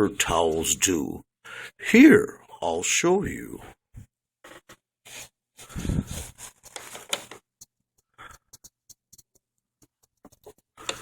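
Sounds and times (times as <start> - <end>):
rustling scrape: 4.5 - 7.6.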